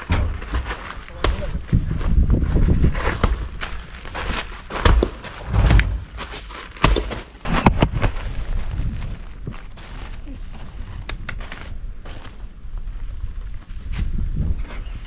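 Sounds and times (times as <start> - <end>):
heavy dull thuds: 0.0 - 7.4
footsteps on ground: 0.0 - 14.0
sharp knocks: 4.8 - 7.3.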